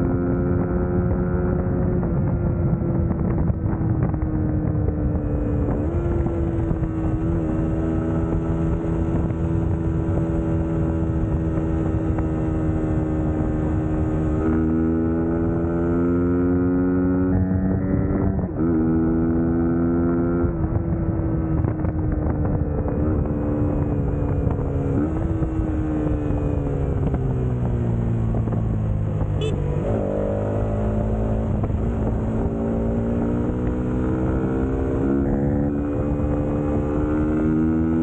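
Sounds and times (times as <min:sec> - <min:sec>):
motorcycle engine running: 0:00.0 - 0:38.0.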